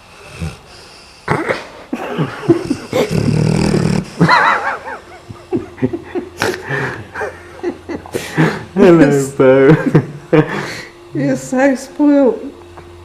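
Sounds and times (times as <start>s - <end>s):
dog snoring: 0.0s - 4.4s.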